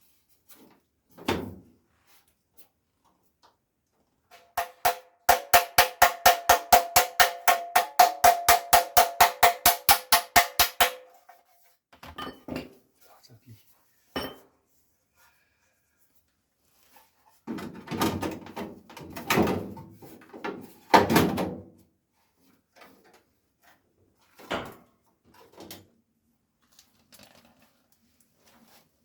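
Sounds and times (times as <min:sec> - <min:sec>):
sharp knocks: 0:04.6 - 0:11.0.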